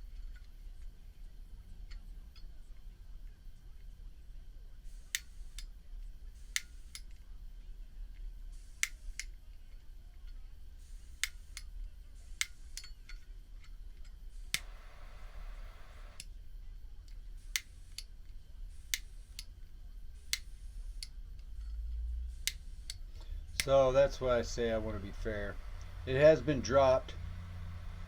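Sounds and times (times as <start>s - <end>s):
gas hissing: 4.7s - 7.2s, 8.4s - 9.5s, 10.6s - 16.3s, 17.1s - 28.0s
lighter ignition button clicking: 5.0s - 5.7s, 6.5s - 7.2s, 8.8s - 9.3s, 11.1s - 11.7s, 12.4s - 12.9s, 14.4s - 16.3s, 17.5s - 18.1s, 18.8s - 19.5s, 22.4s - 23.0s.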